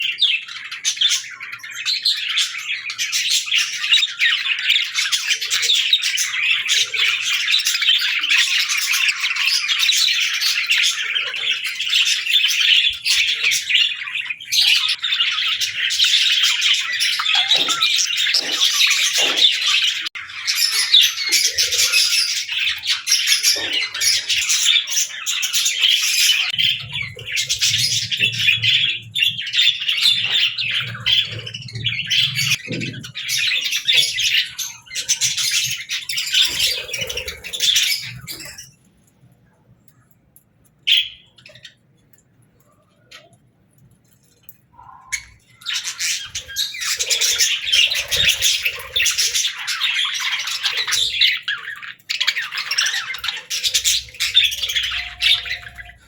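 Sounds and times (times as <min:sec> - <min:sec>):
budgerigars chattering: 0:00.0 - 0:38.6, 0:44.8 - 0:56.0.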